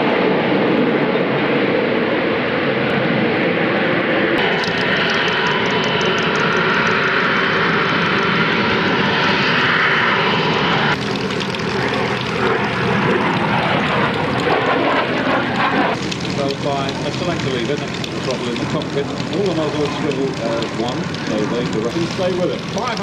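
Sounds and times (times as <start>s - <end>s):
loud jet engine noise: 0.0s - 23.0s.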